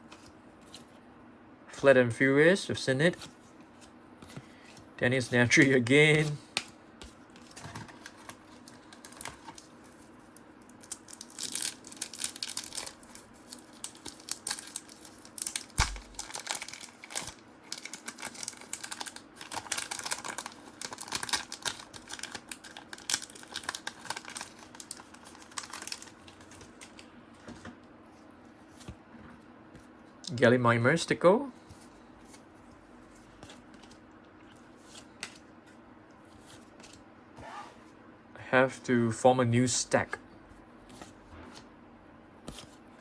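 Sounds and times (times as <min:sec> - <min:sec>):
wrapper crinkling: 0:10.8 - 0:26.8
cards being flipped: 0:15.8 - 0:16.2.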